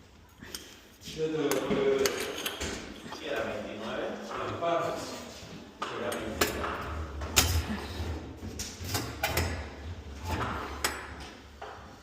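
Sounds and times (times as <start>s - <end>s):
metal hardware knocks and clinks: 1.4s - 3.4s.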